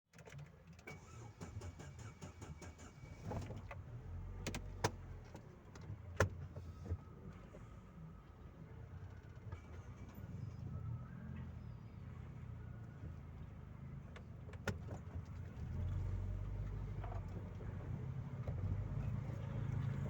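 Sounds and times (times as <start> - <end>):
car engine and road rumble: 0.1 - 20.0.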